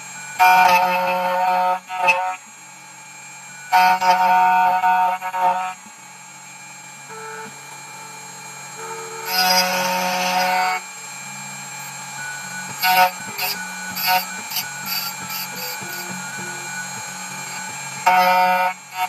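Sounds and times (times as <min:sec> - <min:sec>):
key cutting machine motor hum: 0:02.6 - 0:19.0
key blank being cut: 0:11.8 - 0:19.0.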